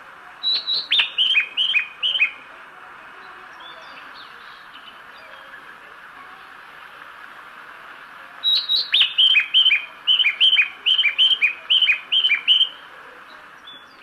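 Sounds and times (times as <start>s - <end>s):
recorded birdsong chime: 8.4s - 14.0s.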